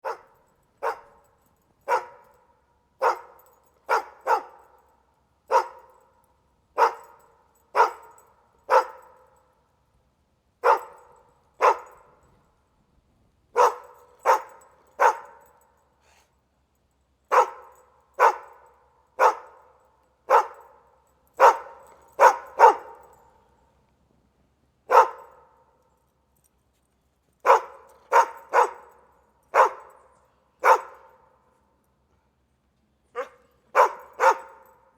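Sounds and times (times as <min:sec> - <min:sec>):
dog barking: 0:00.0 - 0:02.4, 0:03.0 - 0:04.8, 0:05.5 - 0:06.0, 0:06.8 - 0:09.3, 0:10.6 - 0:12.1, 0:13.6 - 0:15.5, 0:17.3 - 0:19.7, 0:20.3 - 0:20.8, 0:21.4 - 0:23.2, 0:24.9 - 0:25.6, 0:27.4 - 0:30.0, 0:30.6 - 0:31.3, 0:33.1 - 0:34.8.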